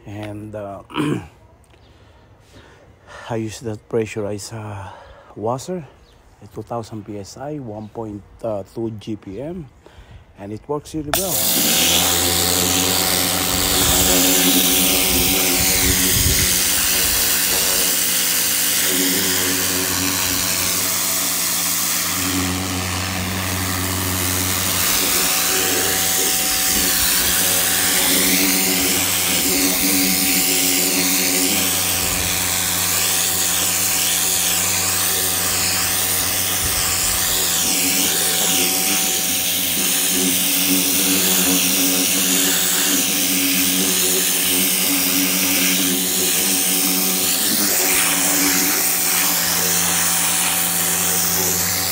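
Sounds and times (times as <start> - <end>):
pressure washer pump hum: 11.1 - 51.9
water jet hissing onto carpet: 11.2 - 51.9.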